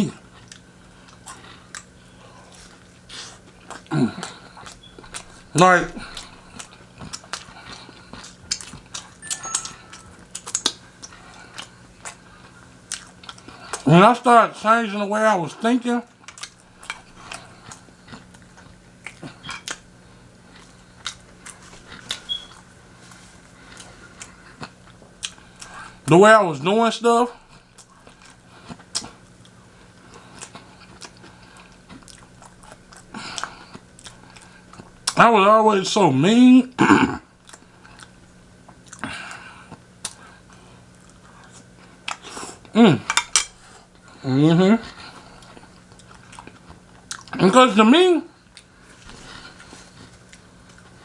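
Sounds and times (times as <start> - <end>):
faint low hum: 0.0 - 51.0
person chewing crispy chicken: 0.2 - 9.2, 9.8 - 13.9, 16.1 - 26.0, 27.4 - 35.2, 37.4 - 42.8, 44.9 - 47.4.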